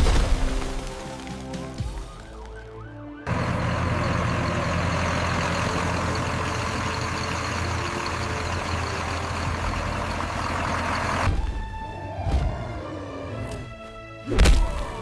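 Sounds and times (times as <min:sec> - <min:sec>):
heavy engine running: 0:03.3 - 0:12.0.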